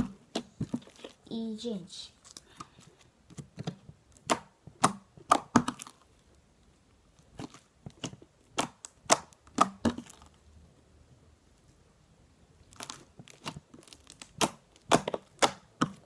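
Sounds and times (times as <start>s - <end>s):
slime squeezed with clicking pops: 4.0s - 6.0s, 7.4s - 10.1s, 12.8s - 16.0s.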